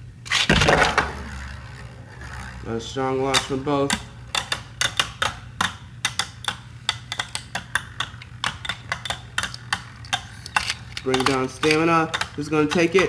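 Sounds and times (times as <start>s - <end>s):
spinning tops clacking together: 0.3s - 13.0s.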